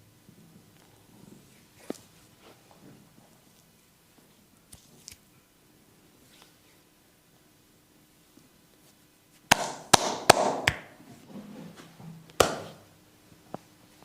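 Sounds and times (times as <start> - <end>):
hands slapping body: 9.5 - 11.0, 12.4 - 12.8.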